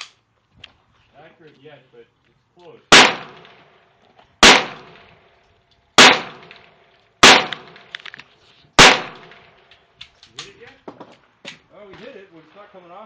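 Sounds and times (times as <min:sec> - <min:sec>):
gunshots with echo: 0:02.9 - 0:03.6, 0:04.4 - 0:05.0, 0:06.0 - 0:06.6, 0:07.2 - 0:07.8, 0:08.8 - 0:09.4.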